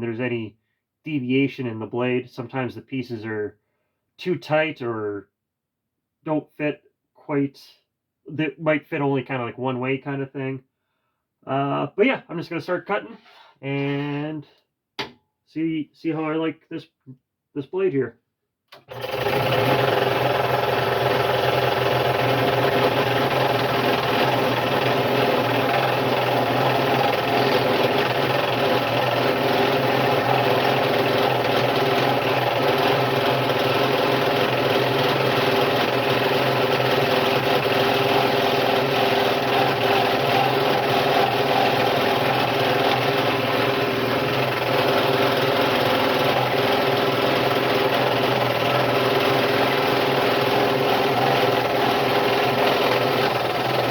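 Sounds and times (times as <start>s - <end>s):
scroll saw cutting wood: 18.8s - 53.9s.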